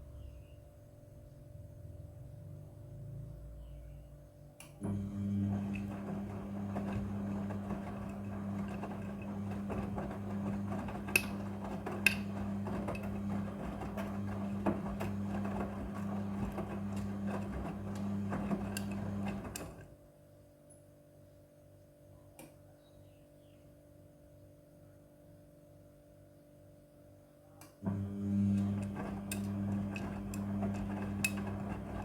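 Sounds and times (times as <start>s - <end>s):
washing machine motor hum: 4.8s - 20.0s, 27.8s - 32.0s.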